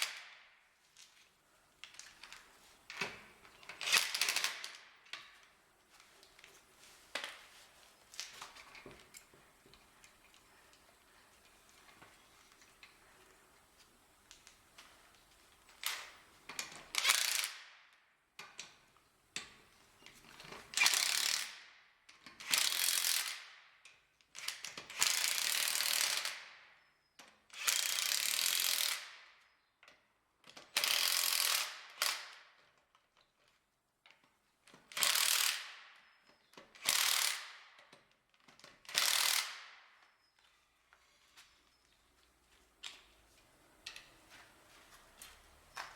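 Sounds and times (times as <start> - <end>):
impact wrench ratcheting clatter: 3.0 - 5.3, 16.9 - 17.6, 20.7 - 21.6, 22.4 - 23.5, 24.4 - 26.5, 27.5 - 29.2, 30.8 - 32.3, 34.9 - 35.8, 36.8 - 37.9, 38.7 - 39.8.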